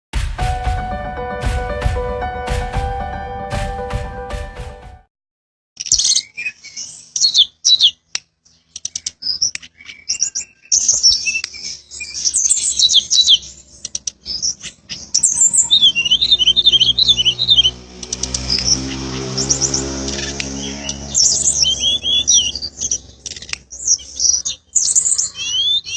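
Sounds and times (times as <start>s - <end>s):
background music: 0.2s - 5.1s
bird singing high chirps: 5.8s - 17.8s, 18.4s - 25.9s.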